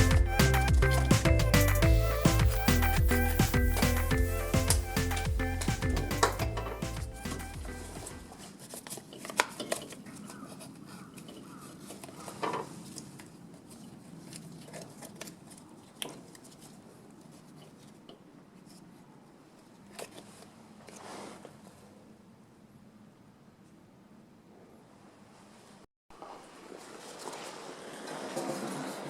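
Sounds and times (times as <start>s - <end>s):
music: 0.0s - 8.3s.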